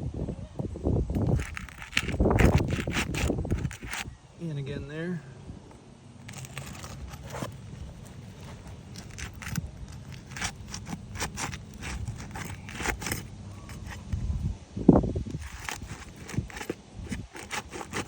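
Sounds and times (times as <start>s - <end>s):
roof shingles scraping and crackling: 1.2s - 4.1s, 6.2s - 14.2s, 15.3s - 18.0s
shingles tearing: 1.2s - 4.1s, 6.2s - 14.2s, 15.3s - 18.0s.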